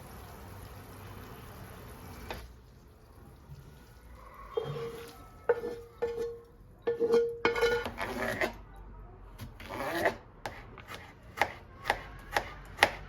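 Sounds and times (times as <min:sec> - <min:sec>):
utensil knocking on metal pot: 0:05.5 - 0:07.9.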